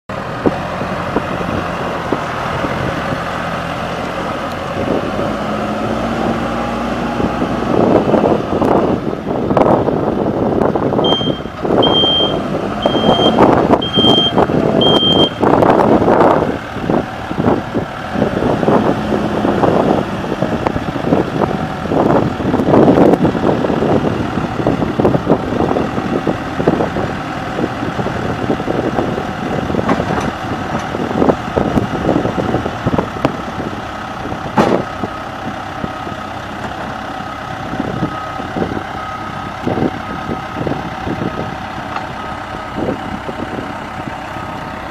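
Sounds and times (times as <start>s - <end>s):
diesel engine running: 0.1s - 44.9s
reversing alarm beeping: 11.0s - 15.5s.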